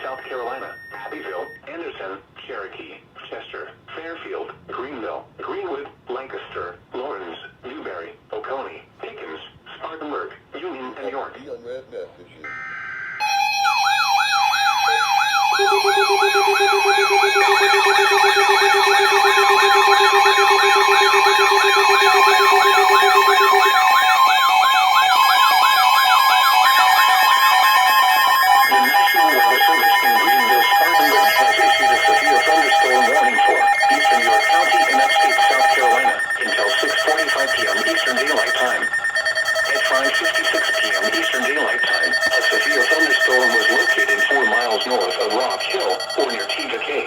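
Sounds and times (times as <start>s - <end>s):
electronic siren alarm: 0.0s - 1.6s, 12.4s - 47.0s.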